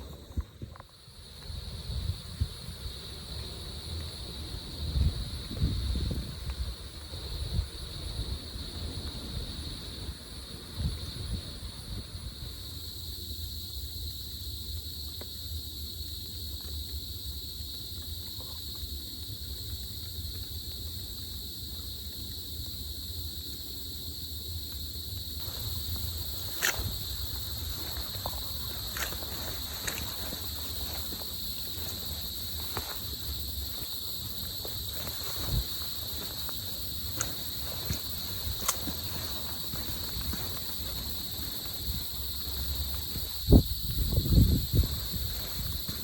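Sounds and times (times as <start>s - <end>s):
wind rumbling on microphone: 0.0s - 14.2s, 15.6s - 46.0s
insects buzzing: 0.0s - 46.0s
high-pitched insect drone: 25.4s - 46.0s.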